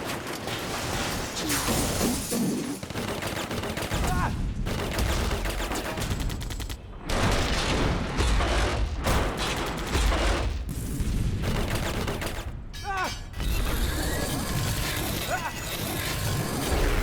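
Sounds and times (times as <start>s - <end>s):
automatic gunfire bursts: 2.8s - 6.8s, 11.4s - 12.6s.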